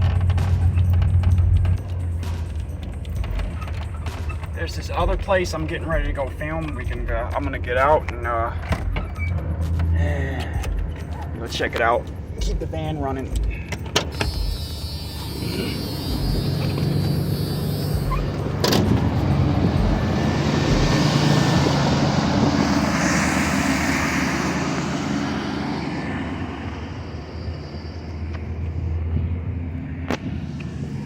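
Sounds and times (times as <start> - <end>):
van engine idling: 0.0 - 31.0
vehicle passing by: 15.3 - 31.0.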